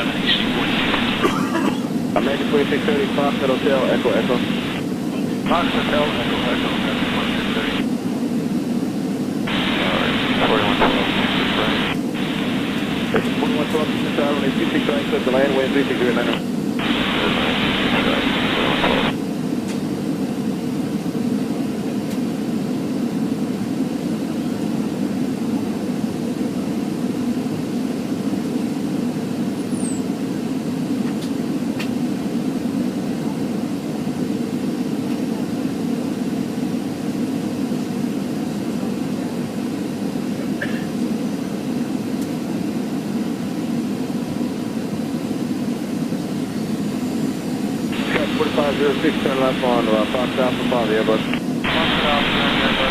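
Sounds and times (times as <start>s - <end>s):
faint steady hum: 0.0s - 20.7s, 44.6s - 52.9s
aircraft cabin engine rumble: 0.0s - 52.9s.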